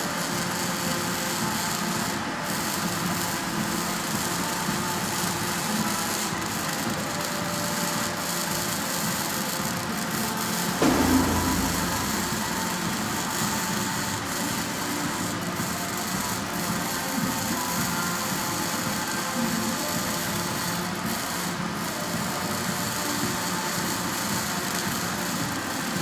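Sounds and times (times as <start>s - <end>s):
mechanical work-site noise: 0.0s - 26.0s
low thud: 10.8s - 13.6s.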